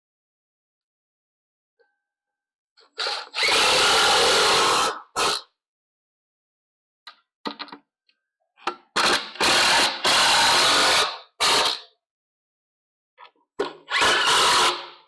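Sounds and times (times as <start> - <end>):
power drill driving screws into wood: 3.0 - 5.4, 9.0 - 11.9, 13.9 - 15.0.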